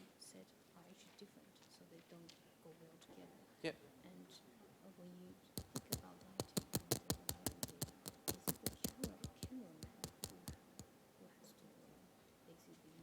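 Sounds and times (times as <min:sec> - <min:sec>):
computer keyboard typing: 0:05.6 - 0:10.6.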